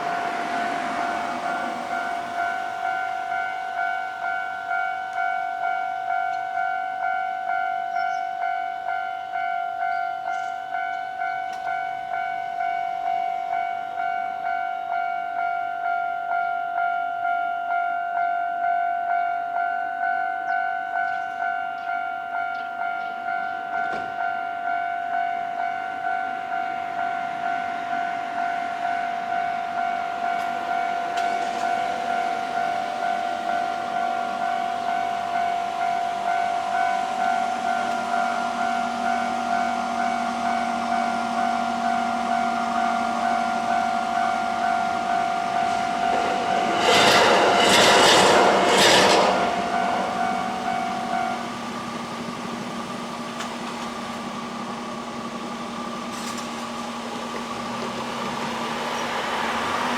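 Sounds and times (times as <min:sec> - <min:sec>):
approaching train: 0:00.0 - 0:59.9
railroad crossing bell ringing: 0:00.0 - 0:59.9.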